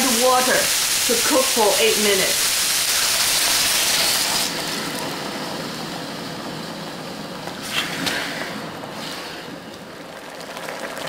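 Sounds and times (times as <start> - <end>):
water sizzling in hot oil: 0.0 - 6.3, 10.0 - 11.0.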